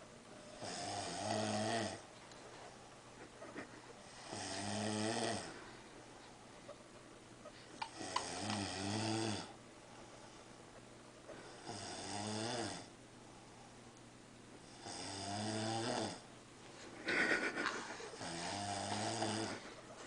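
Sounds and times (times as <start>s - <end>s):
man snoring: 0.5s - 2.0s, 4.1s - 5.6s, 7.9s - 9.6s, 11.5s - 12.9s, 14.6s - 16.3s, 18.2s - 19.6s.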